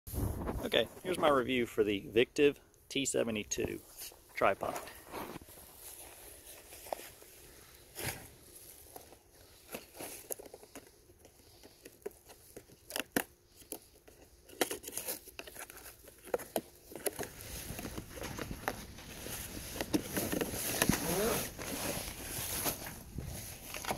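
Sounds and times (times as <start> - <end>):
packaging crinkling and rustling: 5.1 - 23.9.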